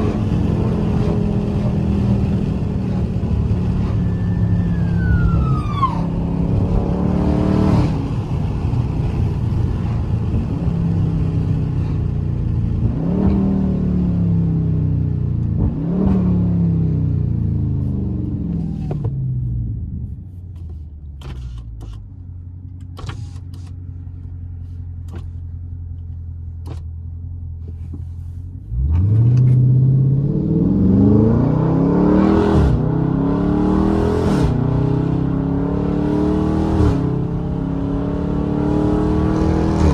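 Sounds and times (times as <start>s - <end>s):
car engine accelerating through gears: 0.0s - 20.0s, 28.6s - 39.9s.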